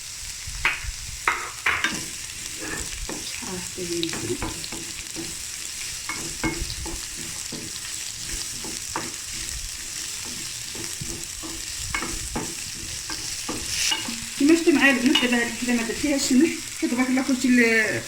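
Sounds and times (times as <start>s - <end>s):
pepper sizzling in oil: 0.0s - 18.0s
utensil knocking against pan: 0.6s - 2.0s, 4.1s - 5.4s, 6.1s - 7.8s, 10.2s - 14.2s.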